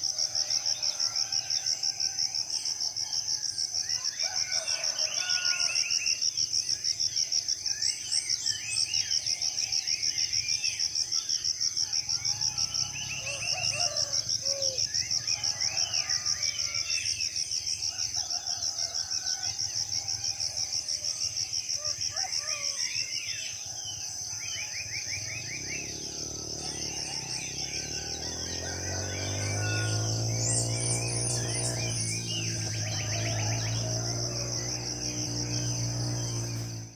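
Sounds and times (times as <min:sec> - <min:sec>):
birds chirping and trilling: 0:07.6 - 0:20.3, 0:21.2 - 0:36.9
insect trilling buzz: 0:24.2 - 0:36.9.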